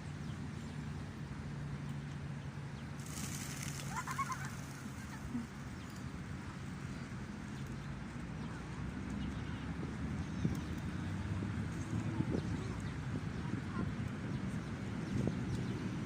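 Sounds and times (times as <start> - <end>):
bird calls: 3.0 - 6.2.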